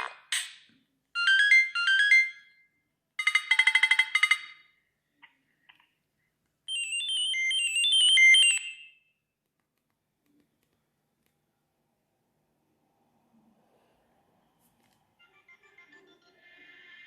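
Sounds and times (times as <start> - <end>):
electronic phone ringtones: 1.1 - 4.9, 6.7 - 9.1.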